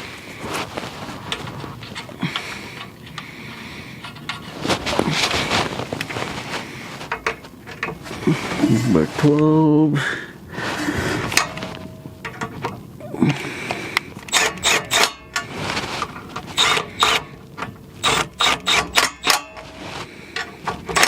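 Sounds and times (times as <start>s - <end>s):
ratchet wrench clicking: 14.3s - 15.2s, 16.6s - 17.2s, 18.0s - 19.5s.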